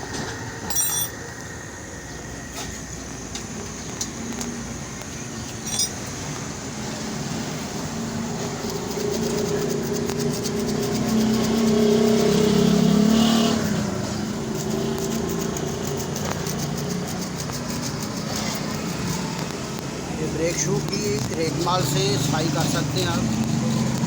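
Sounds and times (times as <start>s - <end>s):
vehicle engine passing by: 6.7s - 15.2s.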